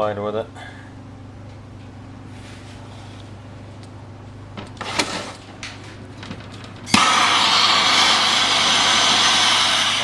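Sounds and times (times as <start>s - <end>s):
torch lighting pop: 6.9s - 9.8s
torch hissing: 6.9s - 10.0s.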